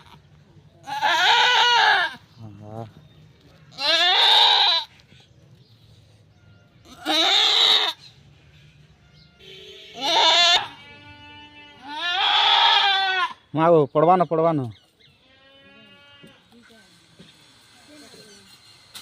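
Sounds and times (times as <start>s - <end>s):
goat bleating loudly: 0.8s - 2.3s, 3.7s - 5.0s, 6.8s - 8.0s, 9.9s - 13.5s, 15.2s - 16.5s.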